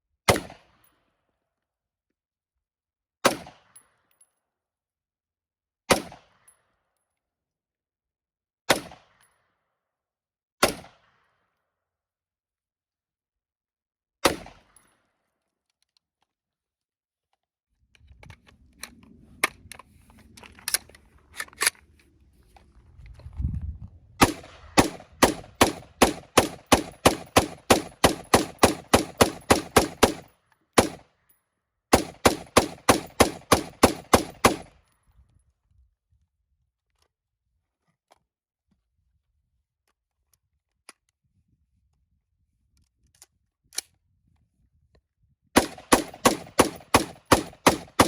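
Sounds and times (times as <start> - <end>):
semi-automatic gunshots: 24.2 - 31.0, 31.9 - 34.7, 45.6 - 48.0.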